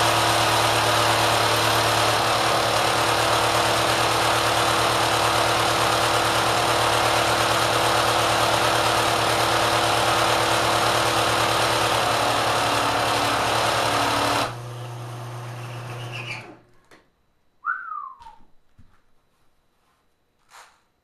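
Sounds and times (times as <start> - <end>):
sewing machine running fast: 0.0 - 16.2
motor humming: 0.0 - 16.6
short falling squeal: 15.6 - 16.6.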